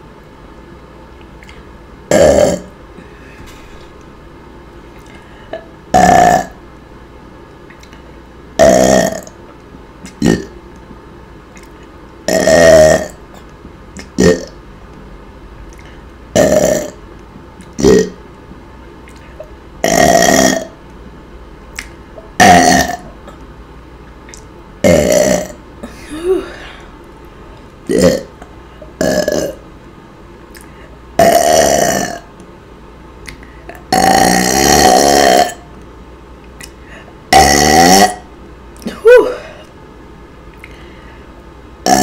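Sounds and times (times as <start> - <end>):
woman burping loudly: 2.1 - 2.7, 5.5 - 6.6, 8.6 - 9.3, 10.2 - 10.6, 12.3 - 13.2, 14.2 - 14.6, 16.4 - 17.0, 19.8 - 20.7, 22.4 - 23.4, 24.8 - 26.8, 27.9 - 28.4, 29.0 - 29.6, 31.2 - 32.2, 33.8 - 35.6, 37.3 - 39.6.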